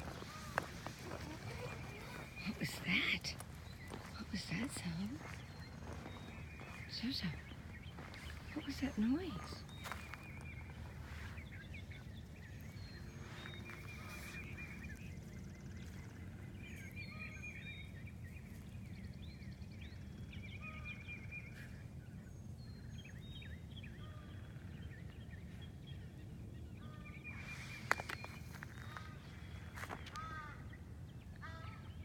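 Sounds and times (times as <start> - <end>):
high chirping animal calls: 0.0 - 15.0.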